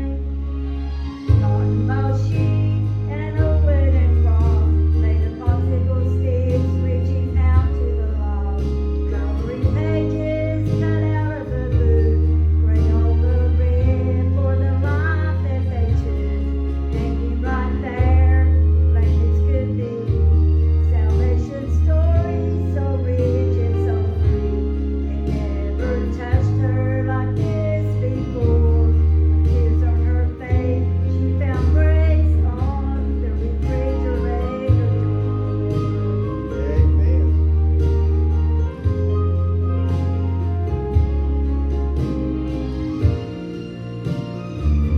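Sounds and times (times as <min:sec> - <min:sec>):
guitar: 0:00.0 - 0:44.9
steady bass line: 0:00.0 - 0:44.9
person singing gospel song: 0:08.6 - 0:37.2.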